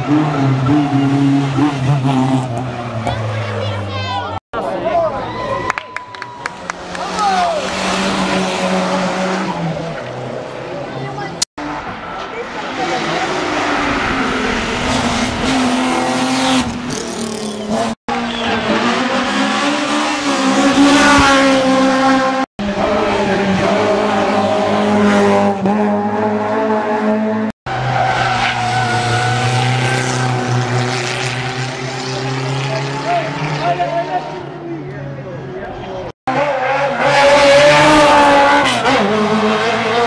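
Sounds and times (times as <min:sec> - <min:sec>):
rally car engines revving: 0:00.0 - 0:04.4, 0:06.6 - 0:40.0.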